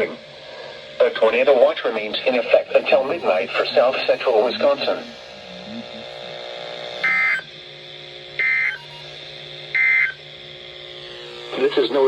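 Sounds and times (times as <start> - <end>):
harsh digital data bursts: 2.0 - 7.5, 8.4 - 10.3.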